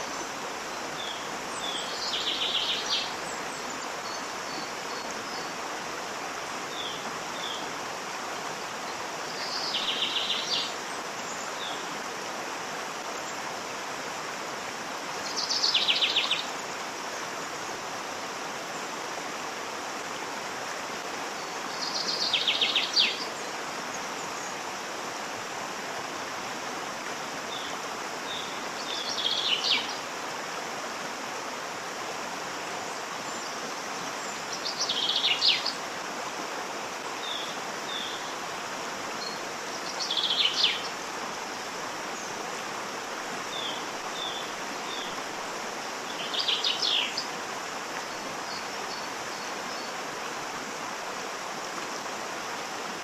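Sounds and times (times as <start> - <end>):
waterfall rushing: 0.0 - 53.0.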